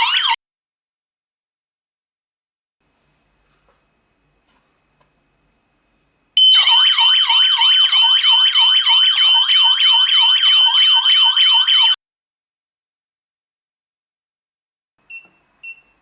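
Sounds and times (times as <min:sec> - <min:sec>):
burglar alarm siren: 0:00.0 - 0:00.4, 0:06.4 - 0:12.0.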